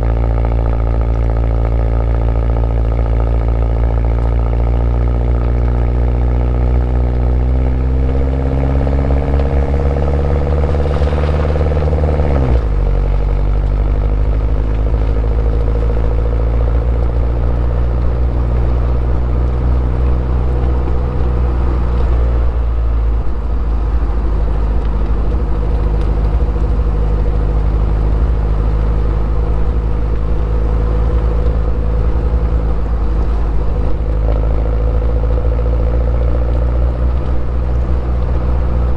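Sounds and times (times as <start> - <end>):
car engine revving up: 0.0 - 38.9.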